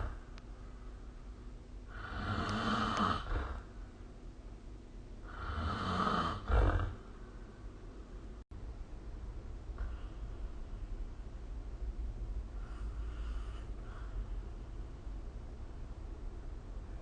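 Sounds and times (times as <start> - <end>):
person snoring: 1.9 - 3.7, 5.2 - 7.1.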